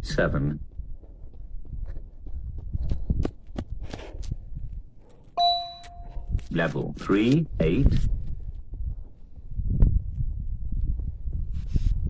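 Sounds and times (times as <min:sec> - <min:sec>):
running footsteps: 0:00.7 - 0:06.8.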